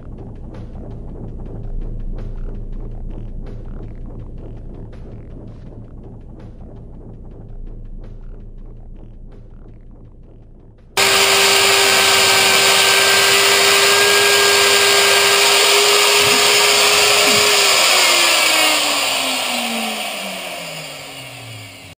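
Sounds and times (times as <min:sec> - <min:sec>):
router spindle whining: 0:11.0 - 0:21.9.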